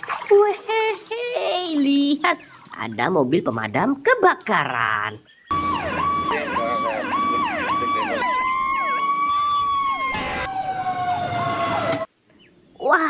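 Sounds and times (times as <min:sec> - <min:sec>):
fire engine siren yelp: 0:05.5 - 0:12.1.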